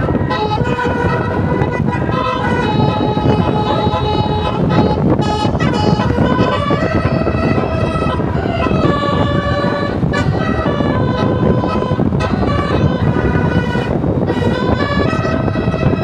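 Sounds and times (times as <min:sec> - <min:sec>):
bus musical horn melody: 0:00.0 - 0:16.0
steady low rumble: 0:00.0 - 0:16.0.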